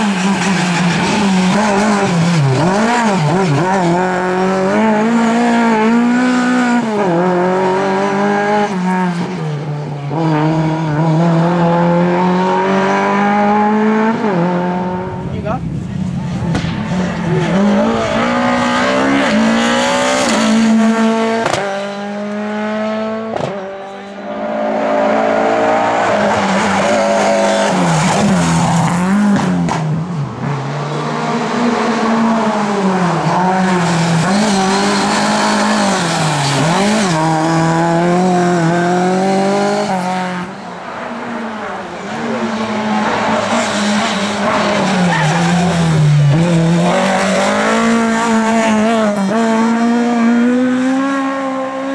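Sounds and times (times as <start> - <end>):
race car engines revving: 0.0 - 51.9.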